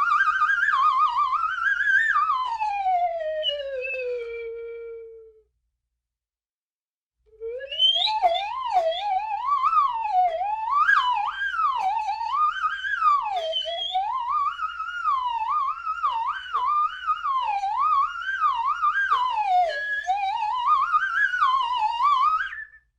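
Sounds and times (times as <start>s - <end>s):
slide whistle swoops: 7.4s - 10.0s, 10.8s - 22.9s.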